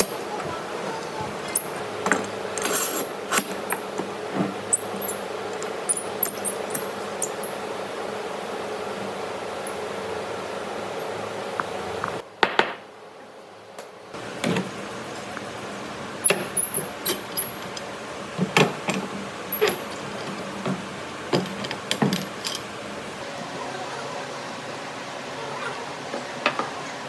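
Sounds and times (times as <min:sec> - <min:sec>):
hard objects knocking and clinking: 0:03.3 - 0:07.8.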